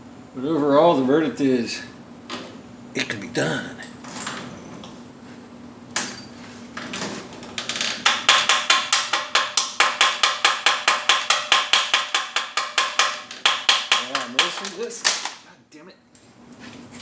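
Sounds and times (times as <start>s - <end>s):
hammer striking metal weld: 8.0s - 15.3s.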